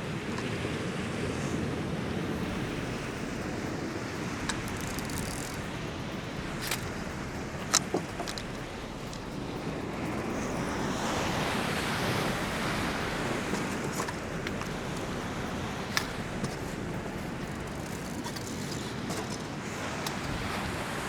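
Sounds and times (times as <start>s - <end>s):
surf washing against rocks: 0.0s - 21.0s
wind on microphone: 0.0s - 21.0s
small clicks: 2.4s - 11.7s, 12.3s - 20.5s.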